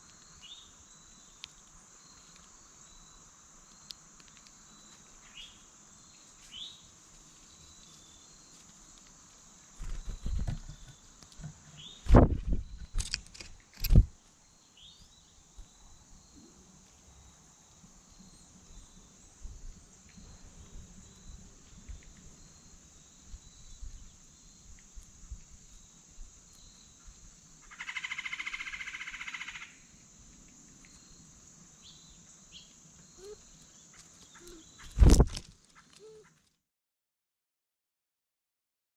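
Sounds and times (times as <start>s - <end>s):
high insect-like hum: 0.0s - 36.4s.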